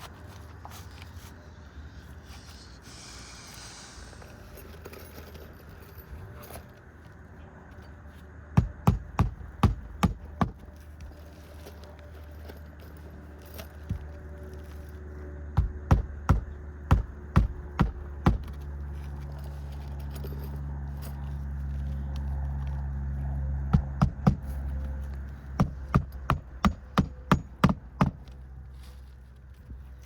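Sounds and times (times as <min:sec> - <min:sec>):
low steady rumble: 0:00.0 - 0:30.0
hammer striking roofing nails: 0:08.6 - 0:10.7, 0:15.6 - 0:18.6, 0:23.7 - 0:24.5, 0:25.6 - 0:28.3.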